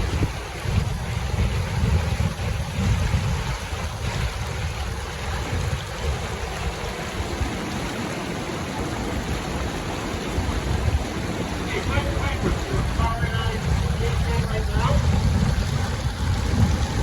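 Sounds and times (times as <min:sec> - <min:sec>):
wind buffeting microphone: 0:00.0 - 0:17.0
river rapids rushing: 0:03.4 - 0:17.0.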